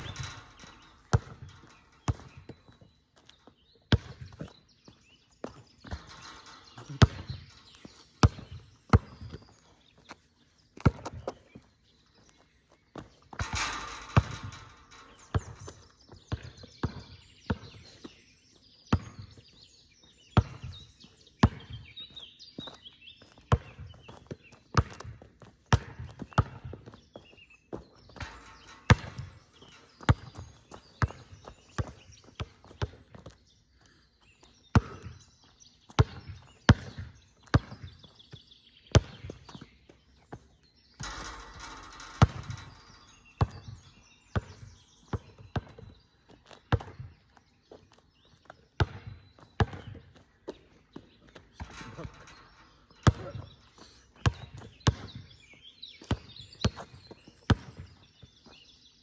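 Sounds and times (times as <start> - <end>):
basketball bouncing on hard court: 0.0 - 2.8, 3.9 - 4.6, 5.4 - 9.4, 10.8 - 11.4, 13.0 - 17.8, 20.4 - 20.8, 21.4 - 21.8, 23.5 - 27.0, 27.8 - 33.4, 34.8 - 35.2, 35.9 - 38.0, 38.9 - 39.7, 41.0 - 47.2, 48.8 - 50.6, 51.6 - 55.3, 56.0 - 58.0.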